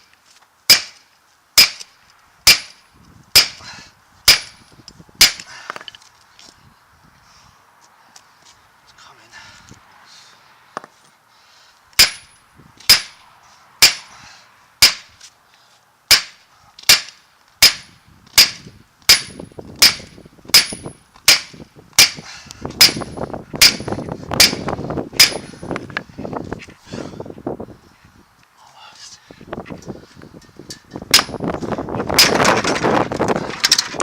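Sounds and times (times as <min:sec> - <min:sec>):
hammer striking steel: 0:01.6 - 0:01.9, 0:02.5 - 0:02.8, 0:04.3 - 0:04.6, 0:12.0 - 0:12.3, 0:12.9 - 0:13.2, 0:13.8 - 0:14.1, 0:14.8 - 0:15.1, 0:16.1 - 0:22.2, 0:22.8 - 0:24.6, 0:25.2 - 0:25.5, 0:31.1 - 0:31.4.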